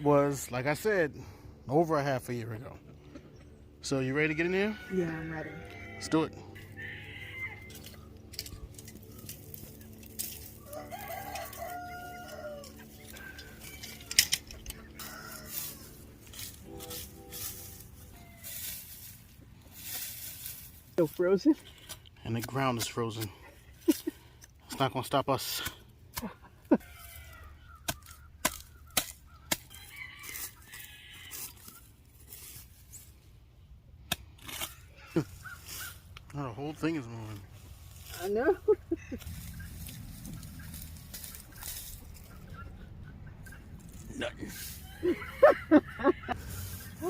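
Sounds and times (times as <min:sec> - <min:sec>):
birds calling: 0:00.0 - 0:33.4, 0:34.5 - 0:47.0
rooster crowing: 0:04.3 - 0:08.0, 0:10.6 - 0:16.0, 0:18.1 - 0:18.6, 0:44.8 - 0:46.6
digging tool striking frozen ground: 0:21.8 - 0:23.3, 0:27.8 - 0:29.8.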